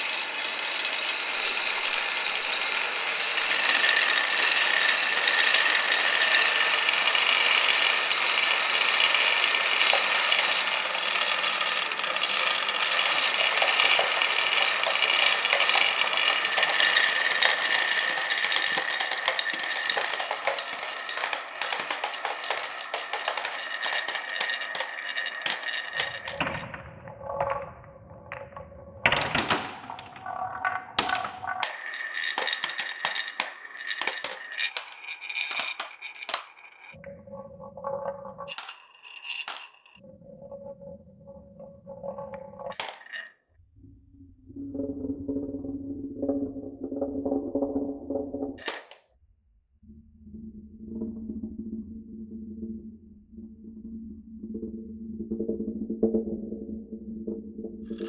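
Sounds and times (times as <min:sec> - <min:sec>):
marbles rattling down wooden run: 0:00.0 - 0:26.6, 0:30.3 - 0:37.0, 0:38.4 - 0:40.0, 0:42.7 - 0:43.3, 0:48.6 - 0:49.0.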